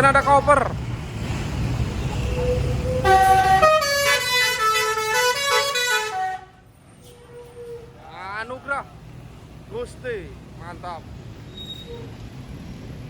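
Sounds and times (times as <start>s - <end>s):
bus engine rumble: 0.0s - 13.0s
musical bus horn tune: 2.4s - 7.8s.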